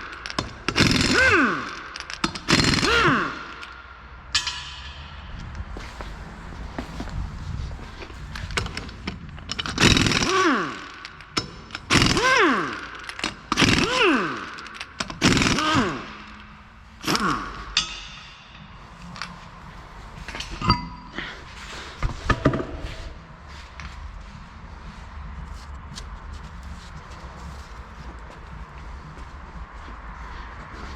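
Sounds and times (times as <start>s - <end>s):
pneumatic impact wrench hammering: 0.0s - 4.9s, 8.2s - 18.6s.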